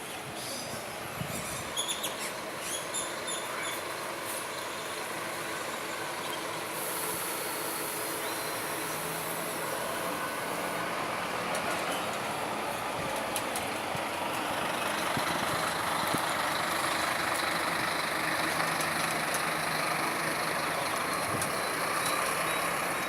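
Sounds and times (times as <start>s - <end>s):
coach engine running: 0.0s - 23.0s
high air hiss: 4.0s - 11.1s.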